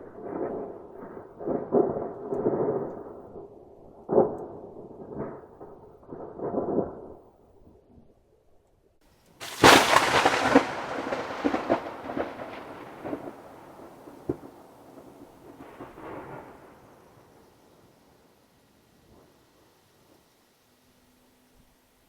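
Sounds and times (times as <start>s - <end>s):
thunderclap with rumble: 0.0s - 7.2s, 9.4s - 17.4s.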